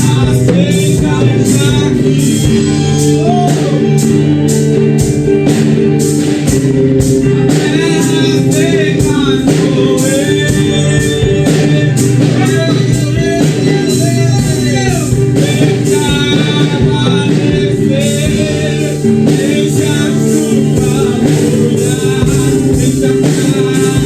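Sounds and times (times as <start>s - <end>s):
person singing: 0.0s - 4.7s, 7.0s - 24.0s
worship band playing: 0.0s - 24.0s.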